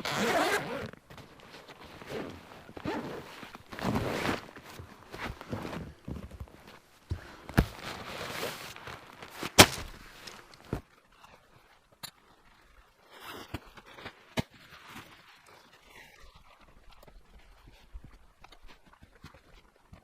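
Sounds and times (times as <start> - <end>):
rustling underfoot: 0.4 - 11.1
footsteps on a trail: 1.1 - 20.0
twigs snapping underfoot: 9.4 - 10.6.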